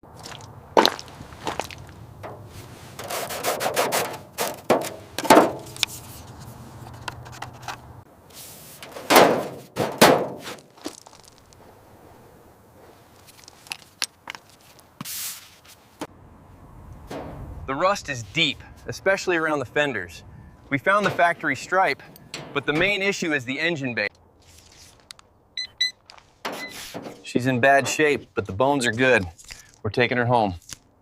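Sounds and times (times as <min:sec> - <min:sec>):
thumps knocks and scraping: 0:00.8 - 0:08.0, 0:08.8 - 0:11.7, 0:20.8 - 0:23.1, 0:26.2 - 0:28.3.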